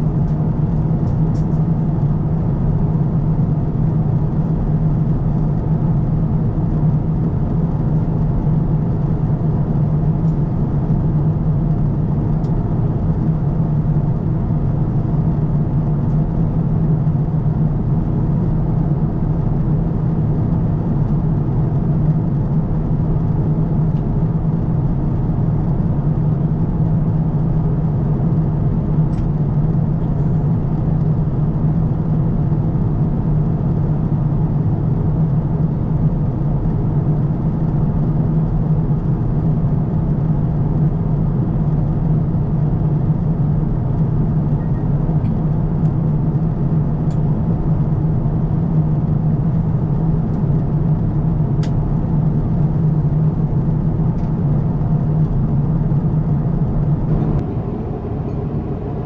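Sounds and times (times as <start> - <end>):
low aircraft engine drone: 0.0 - 34.3, 57.0 - 59.0
rush of cabin air: 57.1 - 59.0.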